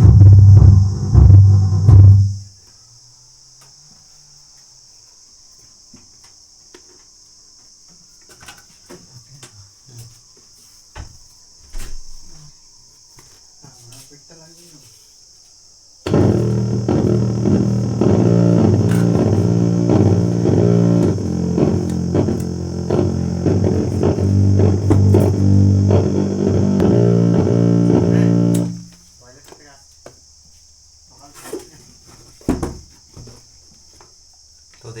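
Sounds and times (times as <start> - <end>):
bass-heavy music: 0.0 - 2.4, 16.1 - 28.9
high-pitched hiss: 16.1 - 29.8.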